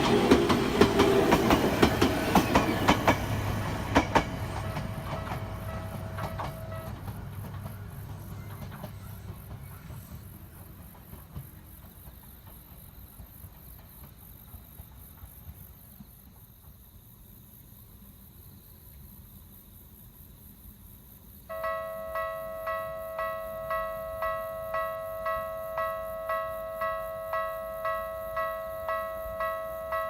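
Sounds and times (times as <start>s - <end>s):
train rumble: 0.0s - 17.3s, 21.5s - 30.0s
level crossing warning bell: 4.0s - 7.2s, 21.5s - 30.0s.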